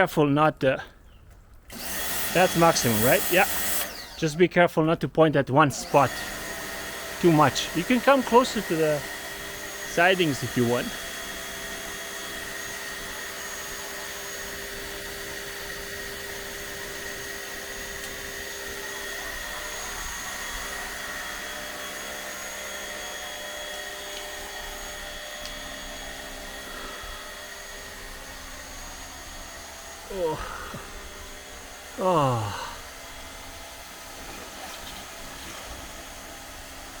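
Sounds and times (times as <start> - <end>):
pressure washer motor whine: 1.7 - 4.4, 5.7 - 37.0
water jet hissing: 1.8 - 4.3, 5.7 - 11.3.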